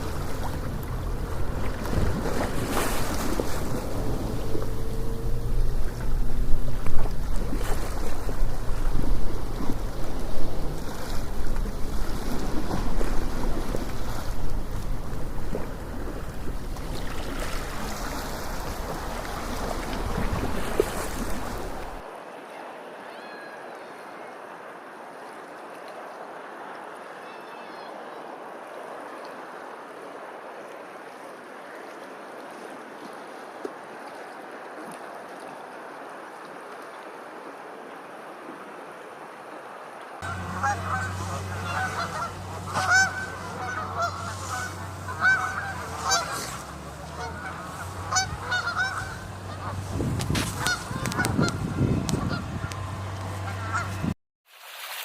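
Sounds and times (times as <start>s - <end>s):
waterfowl honking: 40.2s - 54.1s.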